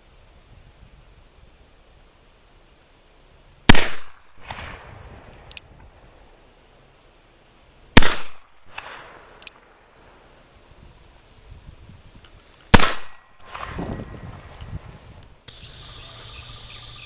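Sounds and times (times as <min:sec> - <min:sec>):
revolver gunshots with echo: 0:03.7 - 0:04.9, 0:08.0 - 0:09.3, 0:12.7 - 0:13.8.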